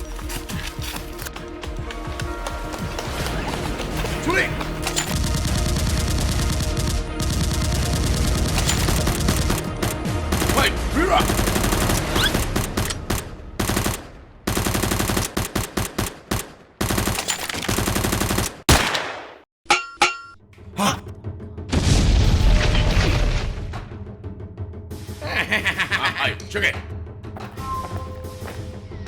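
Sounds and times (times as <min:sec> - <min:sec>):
automatic gunfire: 0:10.3 - 0:19.3.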